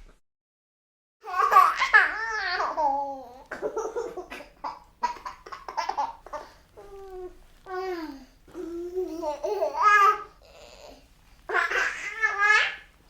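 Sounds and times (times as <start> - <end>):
baby laughing: 1.2 - 7.0, 8.8 - 10.9, 11.5 - 12.9.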